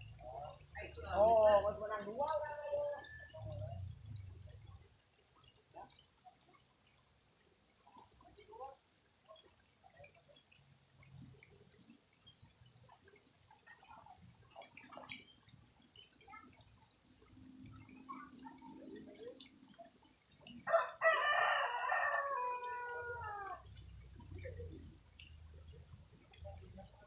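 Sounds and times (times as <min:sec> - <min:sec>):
rooster crowing: 0:20.7 - 0:23.6.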